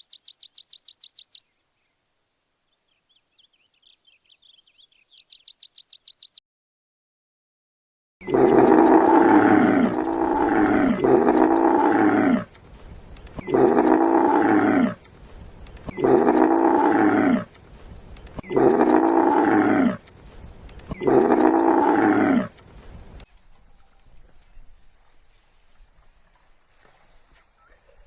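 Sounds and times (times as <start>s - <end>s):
animal calling loudly: 0.0s - 1.4s, 5.2s - 6.4s.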